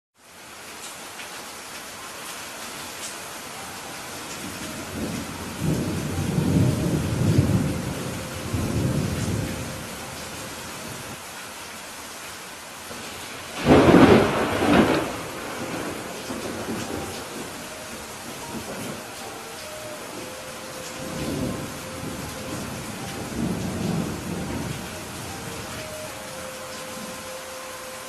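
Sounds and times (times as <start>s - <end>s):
steady rain: 0.2s - 28.0s
rolling thunder: 4.7s - 10.1s, 13.6s - 19.2s, 20.0s - 25.7s
sharp thunderclap: 13.6s - 17.5s.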